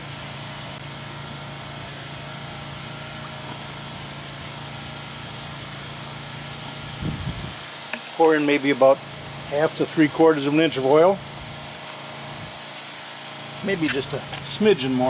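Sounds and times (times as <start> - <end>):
steady mechanical hum: 0.0 - 15.0
even hiss: 7.0 - 15.0.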